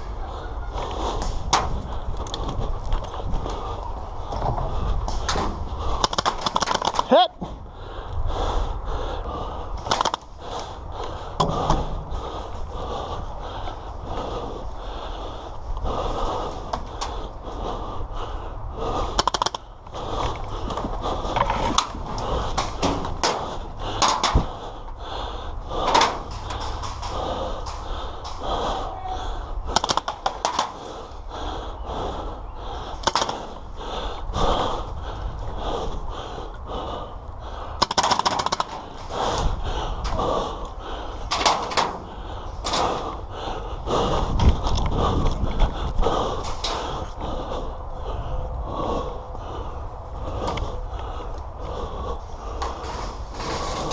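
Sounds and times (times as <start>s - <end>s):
heavy breathing: 0.0s - 53.9s.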